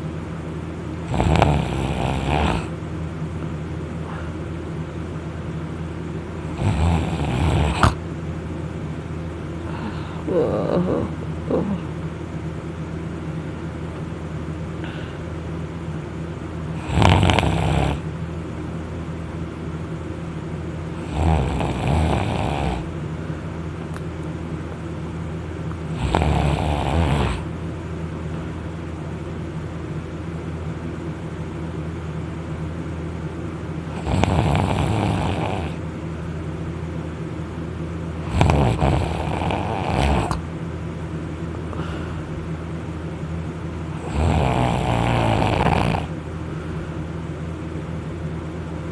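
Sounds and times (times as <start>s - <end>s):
person snoring loudly: 1.1s - 2.7s, 6.4s - 8.0s, 16.8s - 18.0s, 20.9s - 22.9s, 25.9s - 27.5s, 33.9s - 35.8s, 38.2s - 40.4s, 43.9s - 46.2s.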